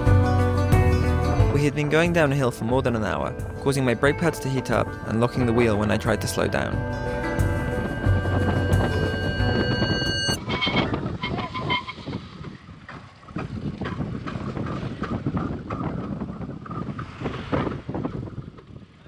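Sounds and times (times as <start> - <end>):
wind: 0.0 - 19.0
bicycle brakes squealing: 7.9 - 12.2.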